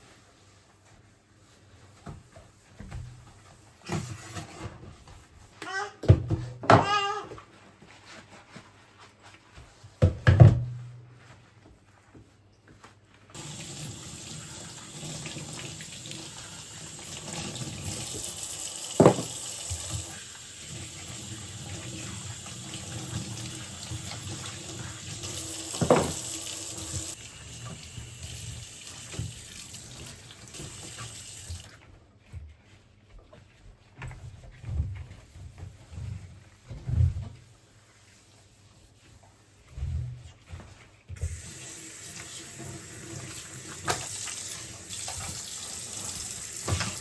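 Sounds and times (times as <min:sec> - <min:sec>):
tap running into a sink: 0:13.4 - 0:31.7, 0:41.2 - 0:47.0.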